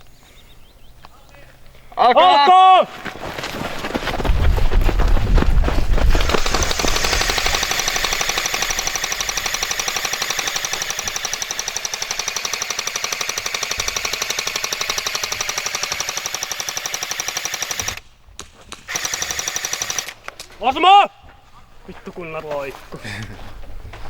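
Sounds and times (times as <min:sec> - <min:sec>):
airsoft gun firing full-auto: 0:06.2 - 0:18.0, 0:18.9 - 0:20.2.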